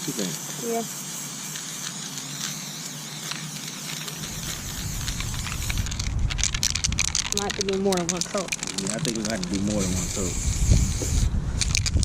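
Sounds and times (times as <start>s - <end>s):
spray paint can hissing: 0.0s - 12.0s
low rumble: 4.0s - 12.0s.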